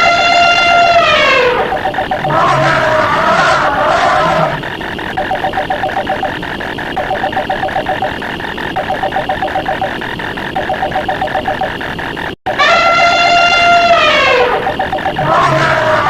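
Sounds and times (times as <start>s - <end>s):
stuttering elephant trumpet: 2.3s - 4.6s, 12.5s - 14.6s, 15.2s - 16.0s.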